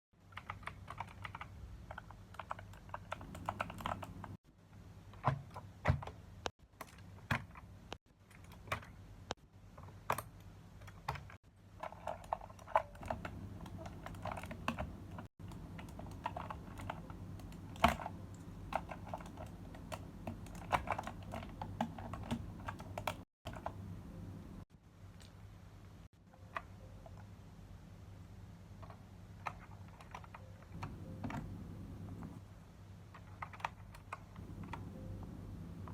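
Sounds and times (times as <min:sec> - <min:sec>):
typing on mechanical keyboard: 0:00.2 - 0:04.4, 0:10.0 - 0:24.0, 0:29.4 - 0:32.4, 0:33.1 - 0:35.9
low steady hum: 0:00.4 - 0:35.9.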